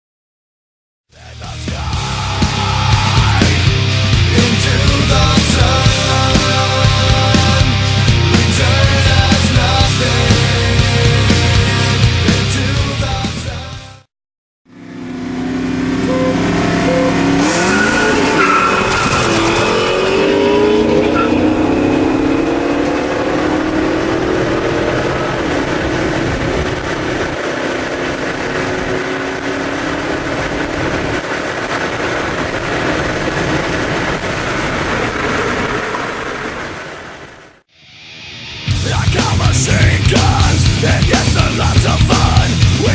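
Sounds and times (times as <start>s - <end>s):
car engines revving: 1.2s - 13.5s, 14.7s - 37.3s, 38.7s - 42.9s
tyre squeal: 16.9s - 20.0s.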